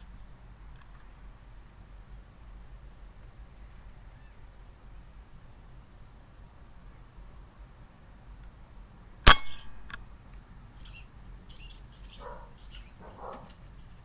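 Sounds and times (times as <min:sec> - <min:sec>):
air rifle shot: 0:09.3 - 0:09.9.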